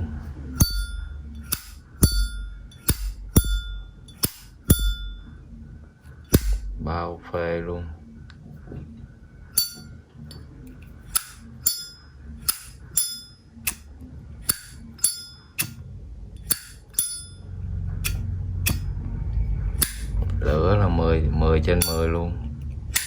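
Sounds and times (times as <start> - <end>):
lighter lid clicking open and shut: 11.1 - 11.4, 12.4 - 13.1.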